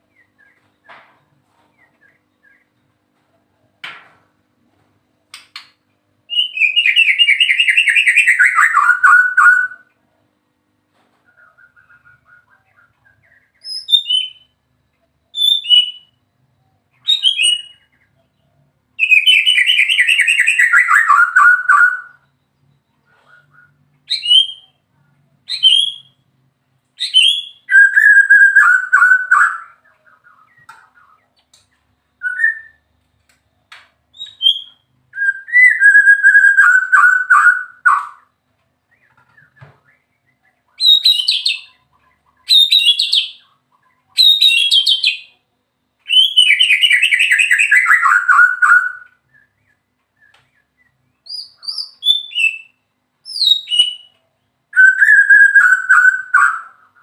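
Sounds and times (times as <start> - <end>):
bird singing whistled phrases: 6.3 - 9.9, 11.3 - 14.6, 15.3 - 16.2, 16.9 - 18.1, 19.0 - 24.8, 25.5 - 26.2, 27.0 - 31.2, 32.2 - 32.9, 34.1 - 38.3, 38.9 - 41.8, 42.4 - 45.4, 46.0 - 57.0
bird trill: 6.3 - 9.9, 11.3 - 24.8, 27.0 - 32.9, 34.1 - 45.4, 46.0 - 57.0.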